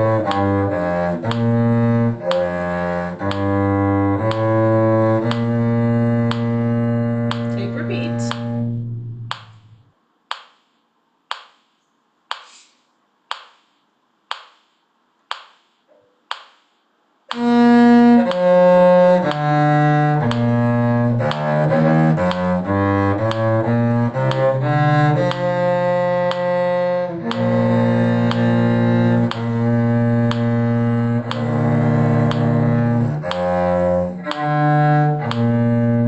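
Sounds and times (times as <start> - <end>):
bowed string instruments: 0.0 - 9.8, 17.3 - 36.0
low cello line: 0.0 - 9.9, 17.3 - 36.0
even clicks: 5.2 - 17.5, 20.2 - 24.5, 25.2 - 25.5, 27.3 - 35.9.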